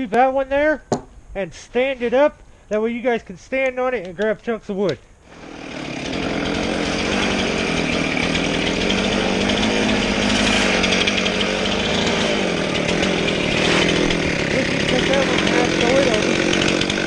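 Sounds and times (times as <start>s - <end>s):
chainsaw running: 5.2s - 17.0s.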